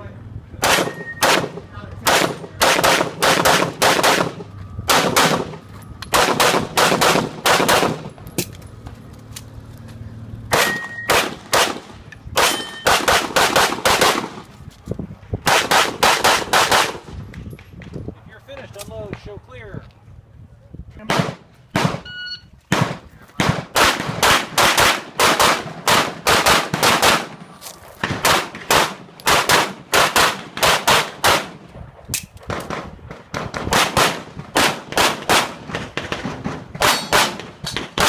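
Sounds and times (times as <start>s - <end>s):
handgun shots: 10.5s - 11.8s, 36.8s - 38.0s.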